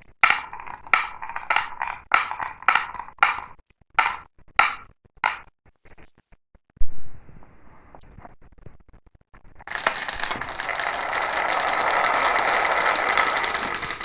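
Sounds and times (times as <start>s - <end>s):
marbles rattling along a track: 0.0s - 5.4s, 9.7s - 14.0s.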